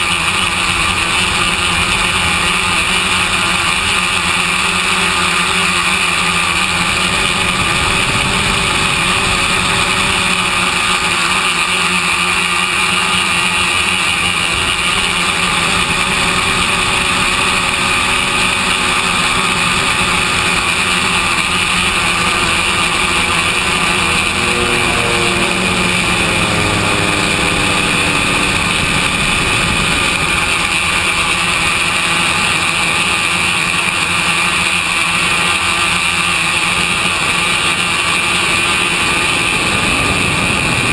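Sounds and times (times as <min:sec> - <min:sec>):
drone motors buzzing whine: 0:00.0 - 0:40.9
wind rush: 0:06.8 - 0:10.7, 0:21.9 - 0:32.0, 0:39.0 - 0:40.9.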